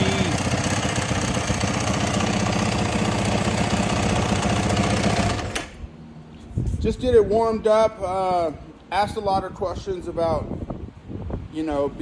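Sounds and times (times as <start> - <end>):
motorcycle engine idling: 0.0 - 5.6.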